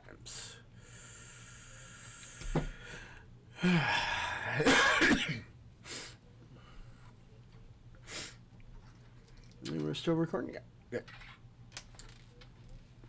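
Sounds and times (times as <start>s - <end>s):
person coughing: 3.6s - 5.5s.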